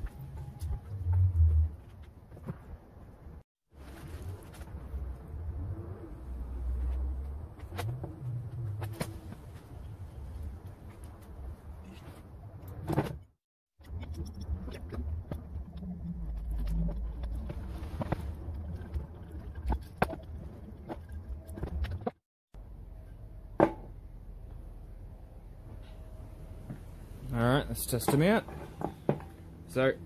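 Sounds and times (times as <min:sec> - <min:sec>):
workshop parts clattering: 0:27.7 - 0:29.8.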